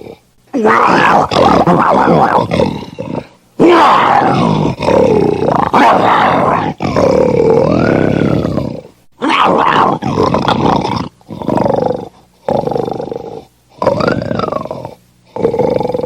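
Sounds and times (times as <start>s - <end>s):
lion roaring and growling: 0.0s - 16.0s.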